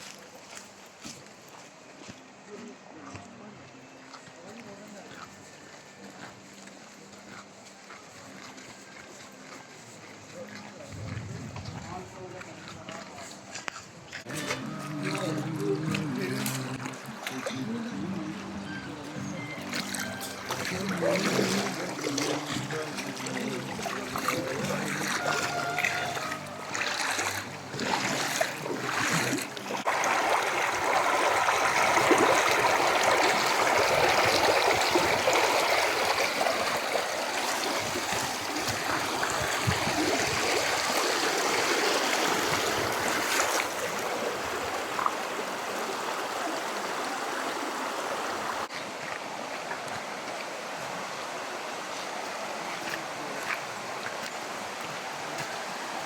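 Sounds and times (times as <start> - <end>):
stream rushing over rocks: 14.2 - 56.0.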